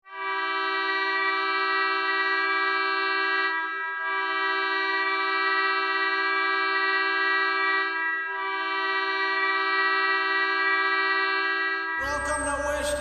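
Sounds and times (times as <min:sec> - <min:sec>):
hockey goal horn blaring: 0:02.7 - 0:05.4, 0:08.4 - 0:13.0.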